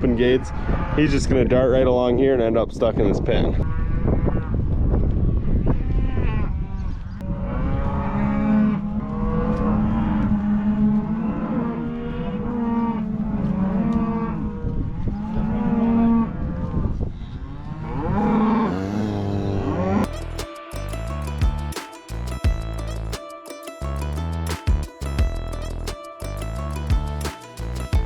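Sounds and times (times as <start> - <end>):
cows mooing and bawling: 3.6 - 4.8, 5.7 - 20.0
steady low rumble: 20.0 - 28.0.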